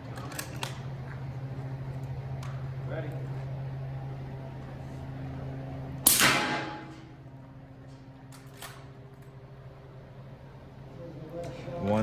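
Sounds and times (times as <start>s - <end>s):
steady low hum: 0.0s - 12.0s
sharp crack: 6.0s - 7.2s
suppressed rifle shot: 6.1s - 7.0s.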